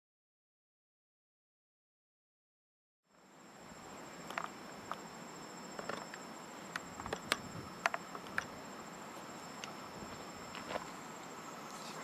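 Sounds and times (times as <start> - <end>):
insects trilling: 3.1 - 12.0.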